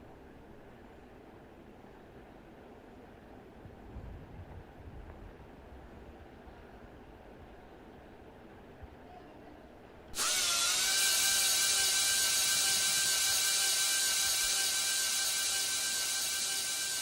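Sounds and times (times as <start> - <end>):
electric drill whining: 10.2 - 17.0.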